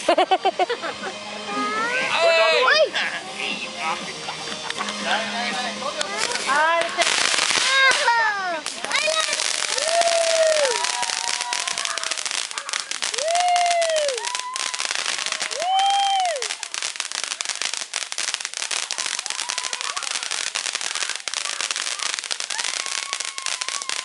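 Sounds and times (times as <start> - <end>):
firecrackers popping: 4.5 - 5.3, 5.9 - 24.0.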